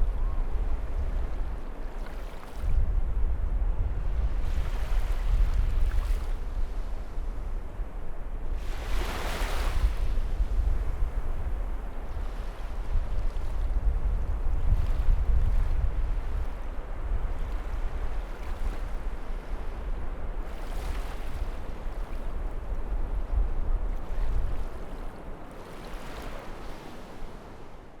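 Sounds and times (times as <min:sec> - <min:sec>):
sea waves breaking ashore: 0:08.6 - 0:10.2, 0:23.8 - 0:28.0.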